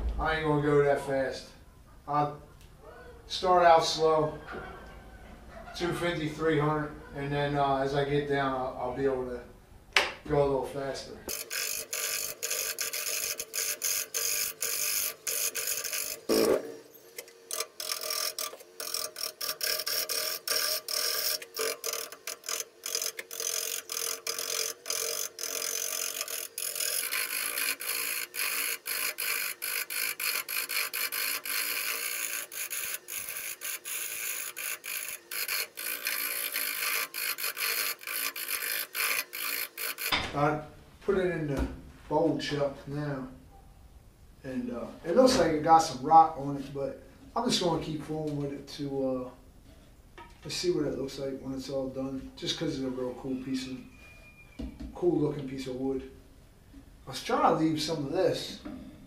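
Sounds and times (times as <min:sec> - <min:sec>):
wood lathe gouge scraping: 0:11.3 - 0:40.1.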